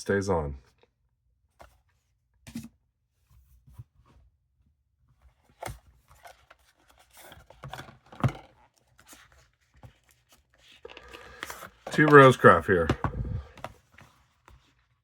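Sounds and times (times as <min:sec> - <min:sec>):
packaging rustling: 0:06.1 - 0:14.4.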